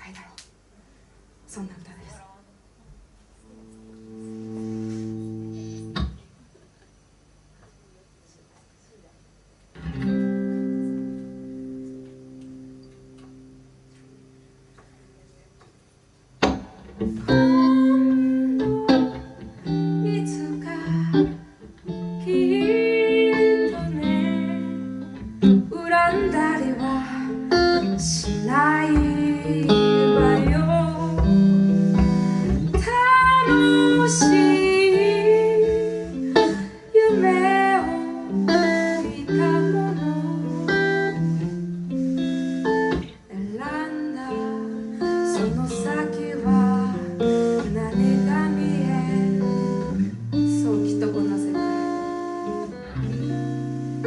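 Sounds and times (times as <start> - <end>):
guitar accompaniment: 3.4 - 6.4, 9.7 - 15.7, 16.3 - 54.0
person singing a ballad: 17.2 - 41.2, 43.3 - 54.0.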